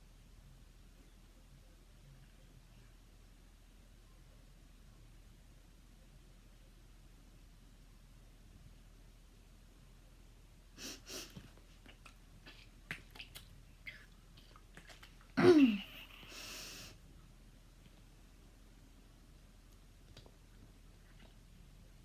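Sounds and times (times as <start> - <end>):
faint breathy noises: 10.7 - 12.8, 15.8 - 17.1
breathy hiss: 10.8 - 11.5, 15.5 - 17.0
loud cough: 15.4 - 16.2.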